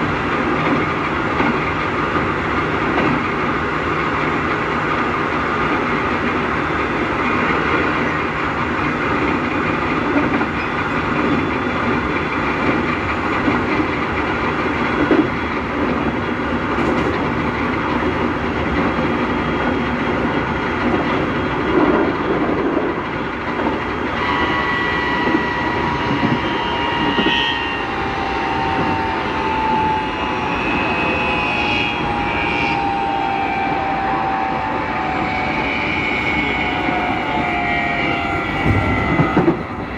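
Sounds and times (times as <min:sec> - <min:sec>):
wheels rumbling on rail: 0:00.0 - 0:39.9
two-tone inverter motor whine: 0:24.2 - 0:39.9.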